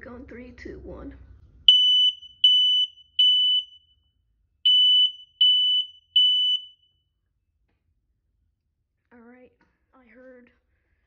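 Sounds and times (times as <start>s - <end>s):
smoke alarm beeps: 1.7s - 4.1s, 4.7s - 7.0s.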